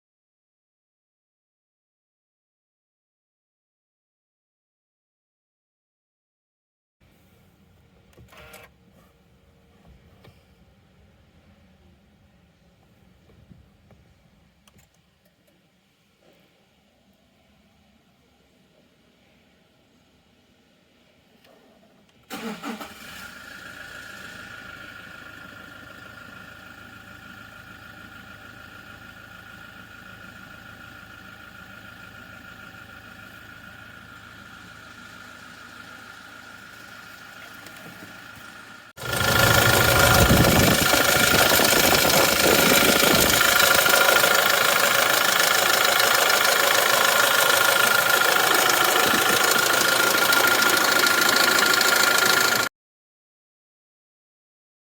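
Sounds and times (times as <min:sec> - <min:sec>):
engine idling: 0:22.3 - 0:52.7
metallic engine rattle: 0:31.0 - 0:52.7.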